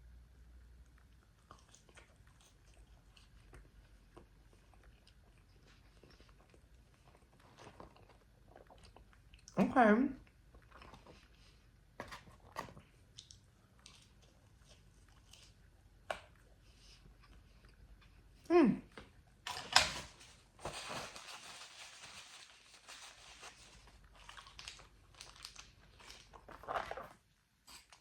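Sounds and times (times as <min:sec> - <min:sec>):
chewing with crunchy clicks: 0:00.6 - 0:09.6, 0:10.2 - 0:19.8, 0:23.8 - 0:28.0
crunching and rustling: 0:19.5 - 0:28.0.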